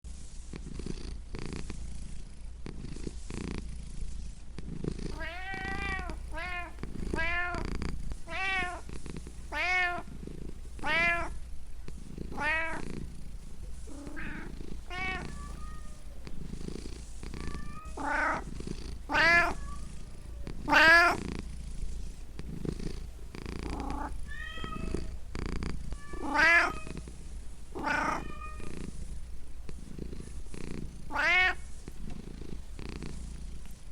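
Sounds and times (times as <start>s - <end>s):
cat purring: 0.1s - 33.9s
cat meowing: 5.2s - 7.7s, 8.3s - 8.8s, 9.5s - 10.0s, 10.8s - 11.4s, 12.3s - 12.8s, 14.1s - 16.4s, 17.3s - 18.4s, 19.1s - 21.2s, 23.8s - 25.2s, 25.9s - 27.0s, 27.8s - 28.8s, 31.1s - 31.6s.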